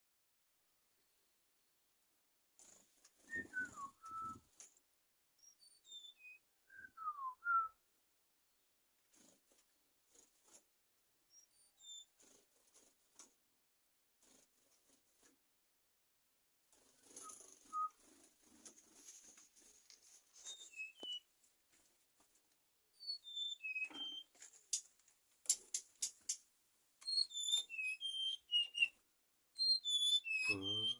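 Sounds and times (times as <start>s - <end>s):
songbird whistling: 3.2s - 4.4s, 5.4s - 7.8s, 17.2s - 18.0s, 20.4s - 21.3s, 23.0s - 24.3s, 27.0s - 29.0s, 29.6s - 30.9s
soft rustling: 16.7s - 22.7s
sharp clicks: 24.7s - 26.5s.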